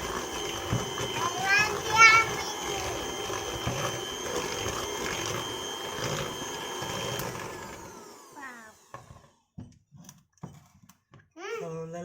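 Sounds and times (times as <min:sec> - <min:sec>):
electric mixer whining: 0:00.0 - 0:09.6.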